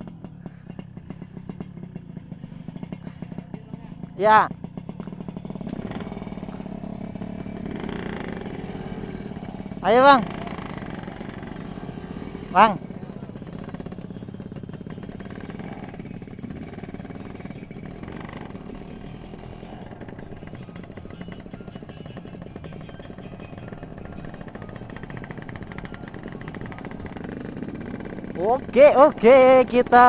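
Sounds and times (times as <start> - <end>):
motorcycle engine running: 0.0 - 30.0.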